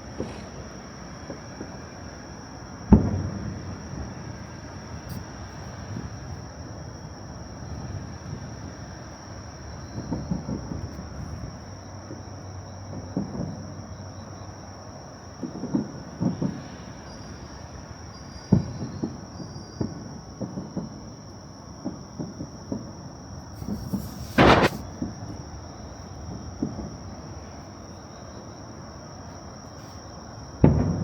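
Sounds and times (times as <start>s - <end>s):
crickets trilling: 0.0s - 31.0s
loud sharp crack: 23.6s - 25.0s.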